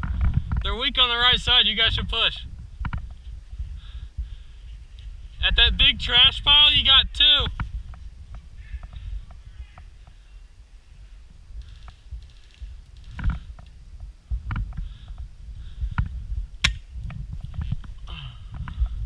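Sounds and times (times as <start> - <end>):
low steady rumble: 0.0 - 19.0.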